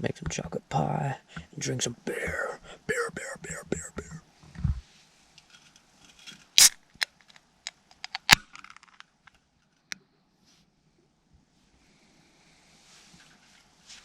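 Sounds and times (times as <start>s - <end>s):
small clicks and crinkles: 5.4s - 10.0s.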